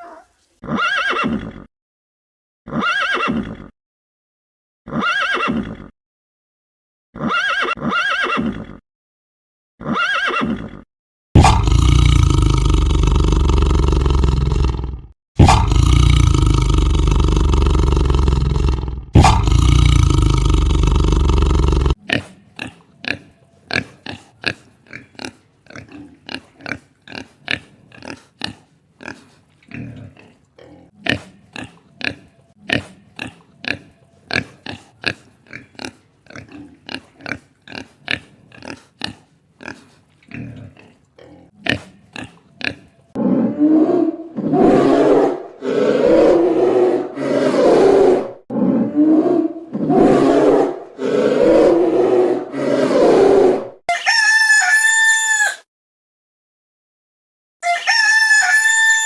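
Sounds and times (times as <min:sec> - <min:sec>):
longer louder animal calls: 0:48.9 - 0:55.7, 0:57.6 - 0:59.0.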